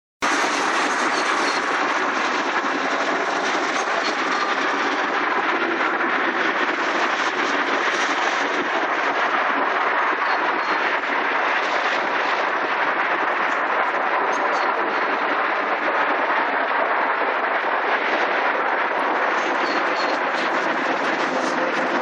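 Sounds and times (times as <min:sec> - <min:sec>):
distant city traffic hum: 0:00.2 - 0:22.0.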